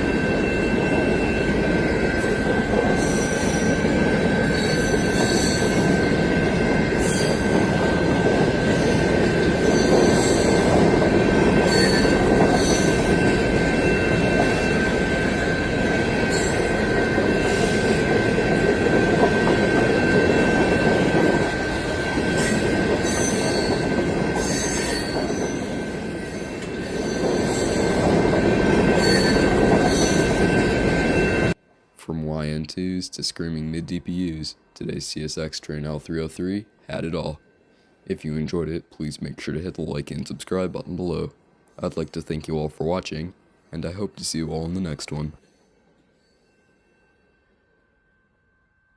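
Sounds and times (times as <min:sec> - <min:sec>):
high-pitched wheel squeal: 0:00.0 - 0:08.0, 0:11.6 - 0:31.6
freight train rolling past: 0:00.0 - 0:48.9.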